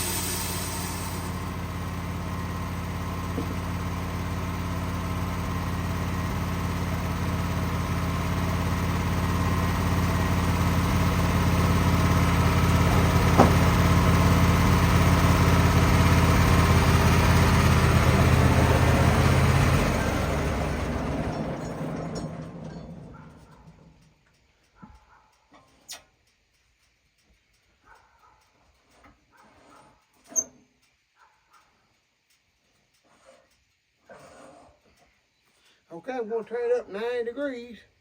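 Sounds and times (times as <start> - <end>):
band saw blade cutting log: 0.0 - 1.6, 12.6 - 14.0
sawmill engine running: 0.0 - 23.9.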